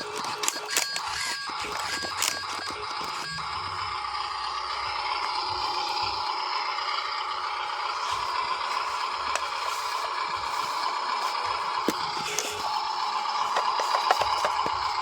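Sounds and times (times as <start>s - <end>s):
plastic rattling and scraping: 0.0s - 3.3s, 9.3s - 15.0s
small electric motor and gears: 0.0s - 15.0s.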